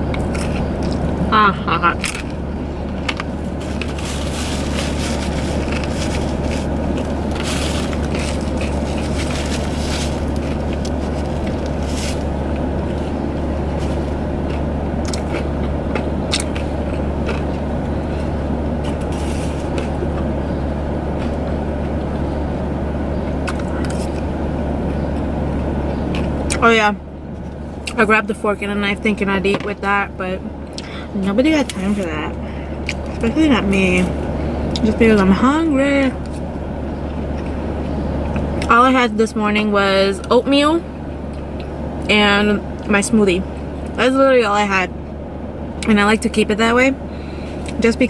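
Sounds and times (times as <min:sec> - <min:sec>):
chewing and crunching pizza: 0:00.0 - 0:26.6, 0:30.6 - 0:35.4, 0:36.2 - 0:38.7
low hum inside car: 0:00.0 - 0:48.0.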